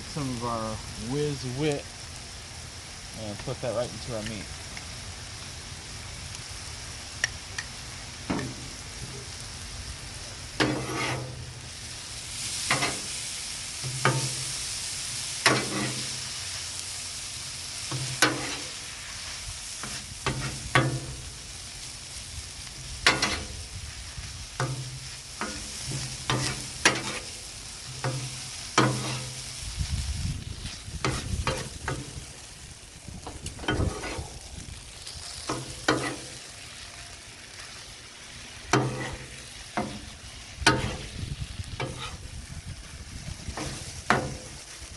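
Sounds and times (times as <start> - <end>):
meat and eggs sizzling on griddle: 0.0 - 44.9
metal spatulas scraping steel: 10.6 - 11.3, 18.2 - 18.7, 23.1 - 23.5, 25.4 - 27.3, 28.8 - 29.4, 33.7 - 34.3, 38.8 - 39.3, 41.8 - 42.2.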